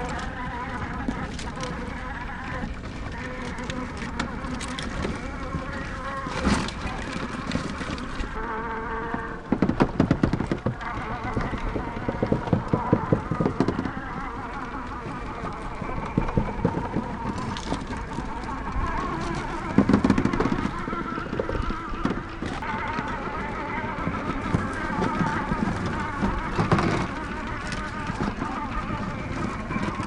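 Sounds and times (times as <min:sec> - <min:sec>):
electric motor whining: 0:00.0 - 0:30.0
rapid clattering knocks: 0:08.9 - 0:30.0.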